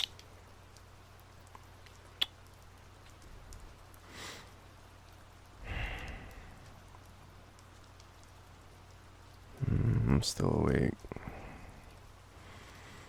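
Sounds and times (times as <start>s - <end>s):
faint steady rain: 0.0s - 13.0s
man breathing and sighing: 5.6s - 6.8s, 11.1s - 13.0s.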